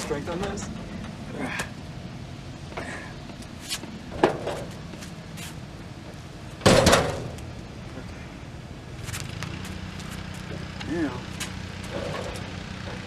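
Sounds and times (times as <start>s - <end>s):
heavy tool box knocking and thudding: 6.6s - 7.3s.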